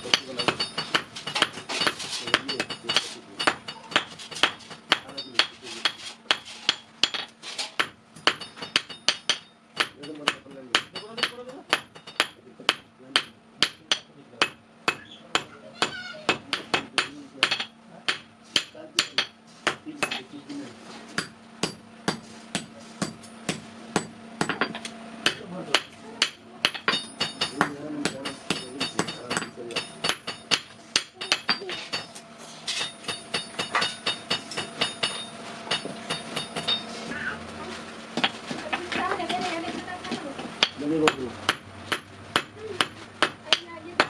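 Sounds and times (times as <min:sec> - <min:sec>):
hammer ringing on iron: 0:00.0 - 0:20.3, 0:21.2 - 0:32.2, 0:32.8 - 0:36.9.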